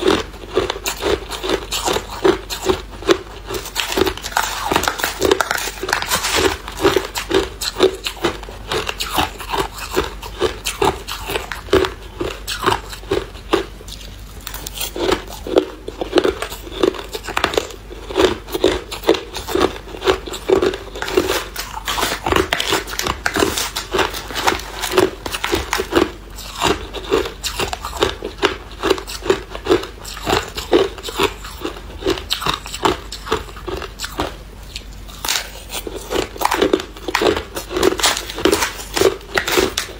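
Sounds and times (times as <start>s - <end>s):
ice crunching being chewed: 0.0s - 39.9s.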